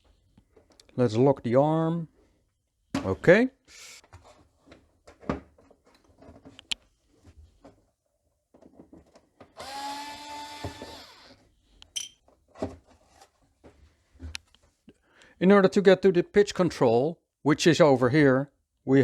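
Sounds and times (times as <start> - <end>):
electric screwdriver running: 9.6 - 11.4.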